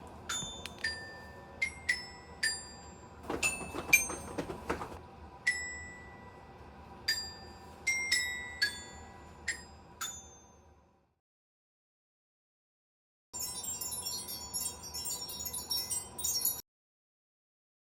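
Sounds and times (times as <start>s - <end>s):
rattling and jingling: 3.2s - 5.0s.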